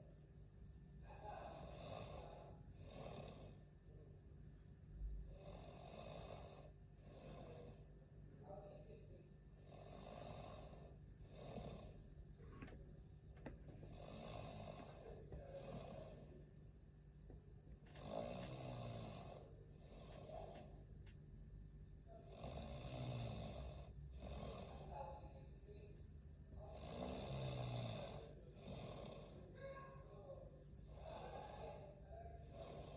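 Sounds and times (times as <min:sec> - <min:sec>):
man snoring: 0:01.4 - 0:03.6, 0:05.3 - 0:07.8, 0:09.6 - 0:12.0, 0:13.8 - 0:16.4, 0:17.9 - 0:20.7, 0:22.3 - 0:25.0, 0:26.6 - 0:29.5, 0:30.9 - 0:32.9.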